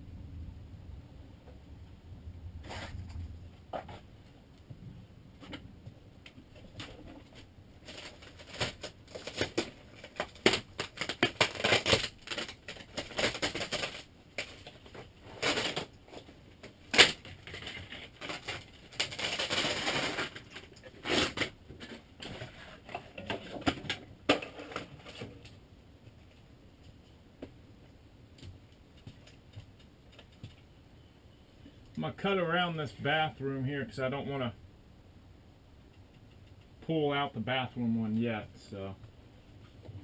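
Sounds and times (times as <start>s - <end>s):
ceiling panels being torn down: 6.7s - 25.4s.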